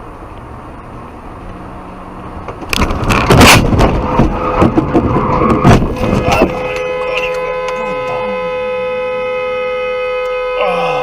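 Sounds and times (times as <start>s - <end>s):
car road noise: 0.0s - 11.0s
sharp knocks and crunches: 2.4s - 6.9s.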